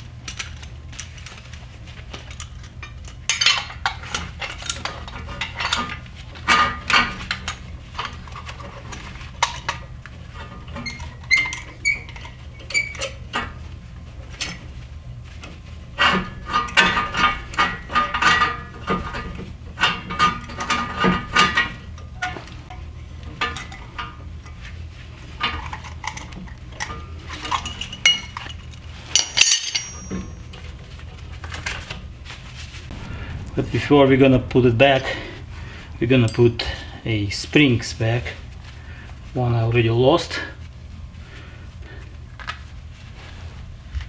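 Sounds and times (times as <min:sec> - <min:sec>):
metal brake hardware clinking: 0:16.2 - 0:24.7, 0:25.4 - 0:30.7.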